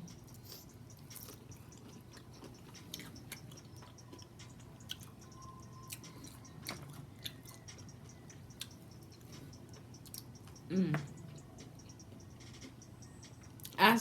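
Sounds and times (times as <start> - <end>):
person chewing food: 0.1 - 10.7.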